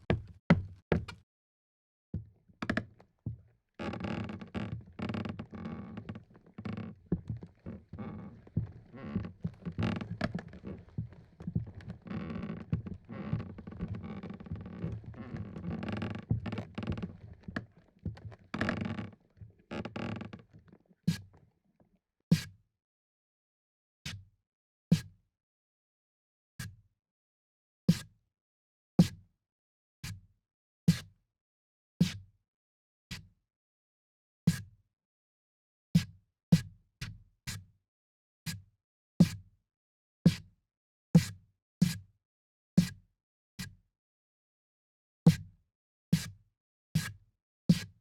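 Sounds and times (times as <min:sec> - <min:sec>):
boots on creaky wooden floorboards: 0:00.1 - 0:01.0, 0:02.6 - 0:21.0.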